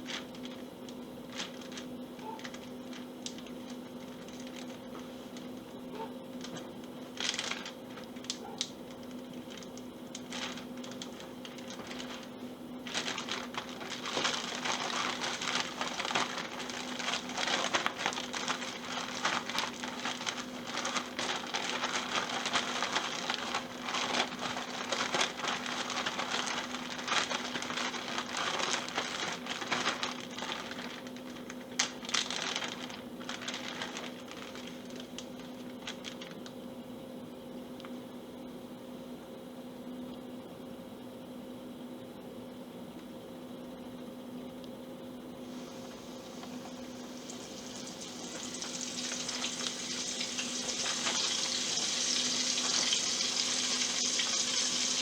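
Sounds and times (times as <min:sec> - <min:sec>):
meat frying in oil: 0:45.5 - 0:55.0.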